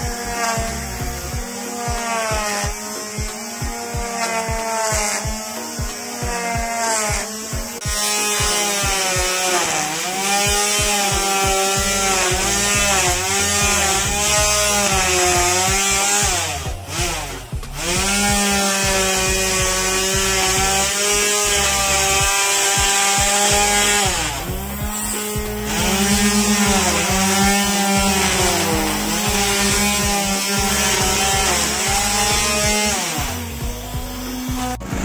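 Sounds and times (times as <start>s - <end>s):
grass cutter engine running: 0.0s - 35.0s.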